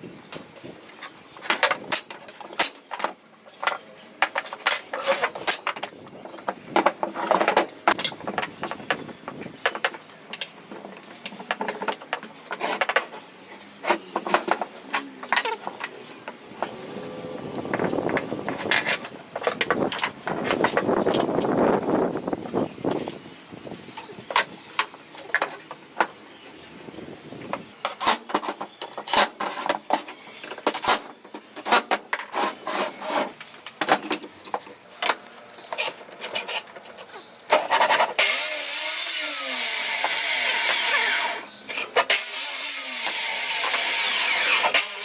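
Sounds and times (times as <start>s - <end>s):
rasping scrape: 31.6s - 33.5s.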